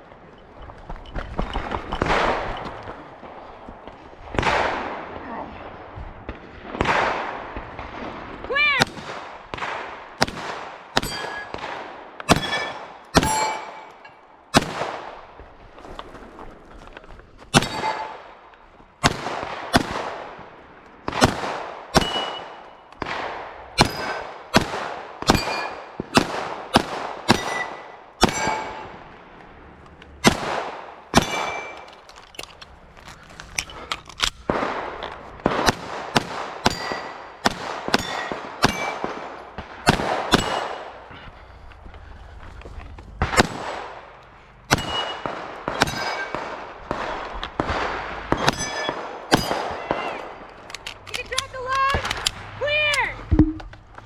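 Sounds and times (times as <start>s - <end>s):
gunshots: 1.4s - 3.5s, 4.3s - 13.9s, 14.5s - 15.3s, 17.5s - 18.4s, 19.0s - 29.1s, 30.2s - 31.9s, 33.7s - 41.2s, 43.2s - 53.7s
steel targets ringing: 11.0s - 11.6s, 12.3s - 14.2s, 17.6s - 18.2s, 23.8s - 24.3s, 25.3s - 25.9s, 27.3s - 28.9s, 37.9s - 39.1s, 44.7s - 46.4s, 48.4s - 49.8s.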